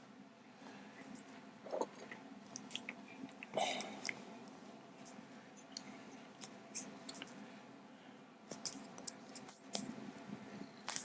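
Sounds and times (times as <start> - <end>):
low room hum: 0.0 - 11.0.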